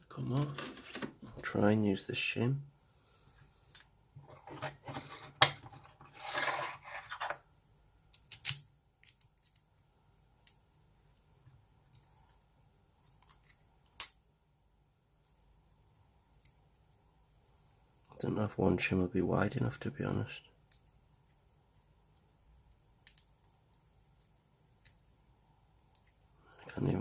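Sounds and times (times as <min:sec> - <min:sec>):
metal shim scraping lock: 0:08.2 - 0:09.6.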